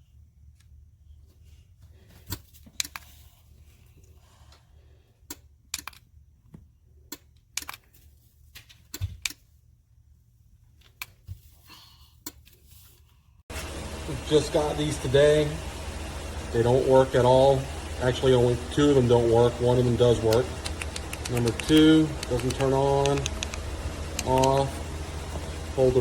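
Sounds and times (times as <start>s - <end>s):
faint low hum: 0.0s - 26.0s
light clicks and taps: 20.3s - 24.7s.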